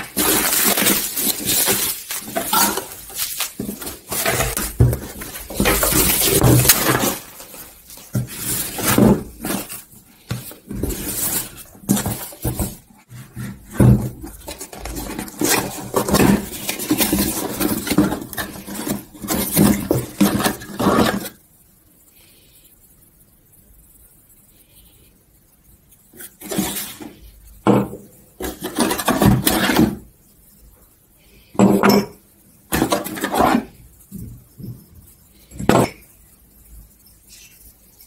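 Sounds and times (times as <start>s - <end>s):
dishes and utensils clinking: 0.0s - 9.8s.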